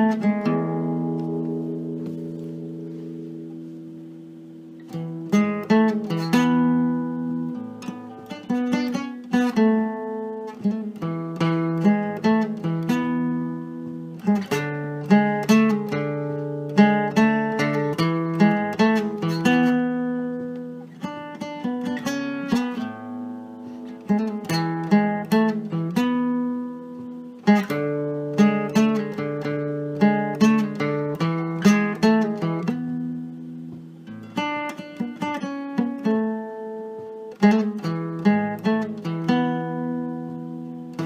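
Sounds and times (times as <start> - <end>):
plucked acoustic string instrument: 0.0 - 41.0.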